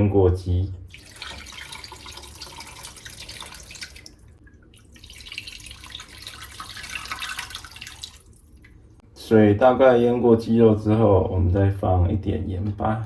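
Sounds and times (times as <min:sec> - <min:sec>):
water pouring into a pot: 0:00.9 - 0:08.8.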